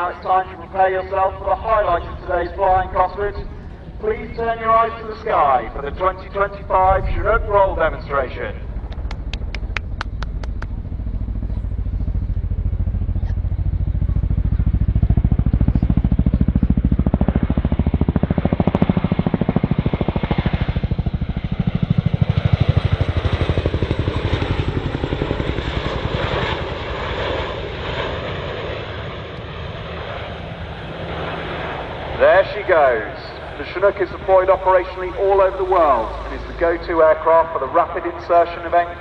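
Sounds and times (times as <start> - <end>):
turbine rumble: 0.0 - 39.0
helicopter rotor blade slap: 8.6 - 13.5.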